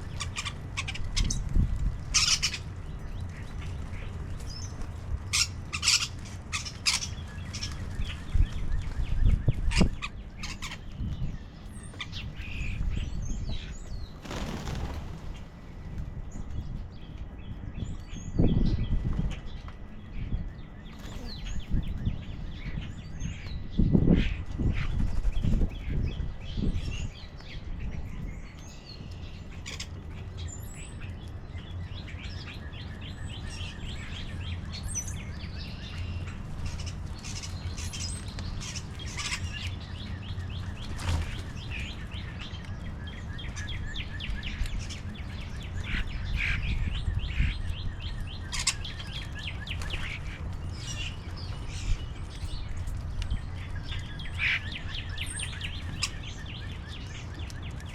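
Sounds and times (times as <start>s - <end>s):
steady low rumble: 0.0s - 20.8s
small birds chirping: 0.0s - 57.9s.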